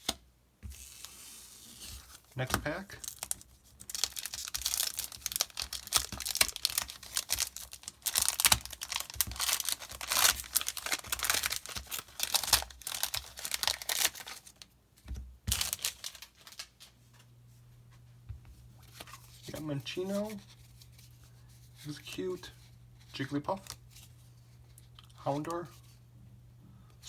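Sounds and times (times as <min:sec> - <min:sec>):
foil wrapper crinkling and tearing: 0:02.7 - 0:14.7, 0:15.5 - 0:16.9
faint low hum: 0:16.4 - 0:27.0.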